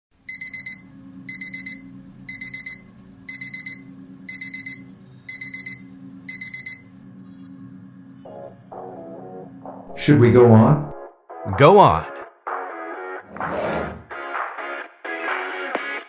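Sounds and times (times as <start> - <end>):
steady low hum: 0.2 - 11.0
electronic alarm beeping: 0.3 - 6.9.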